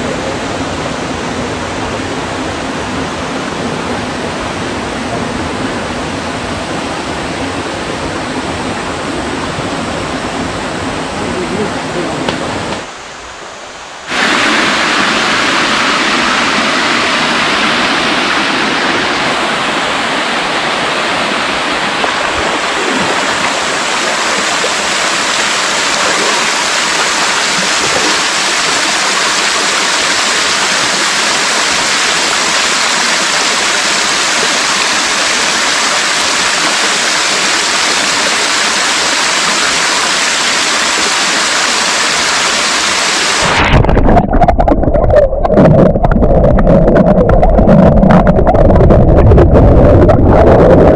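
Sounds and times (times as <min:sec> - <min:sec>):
stream water rushing: 0:00.0 - 0:49.1.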